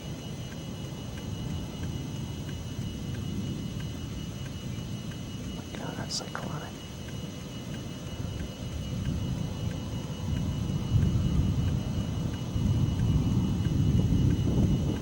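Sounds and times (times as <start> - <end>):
wind buffeting microphone: 6.8 - 15.0.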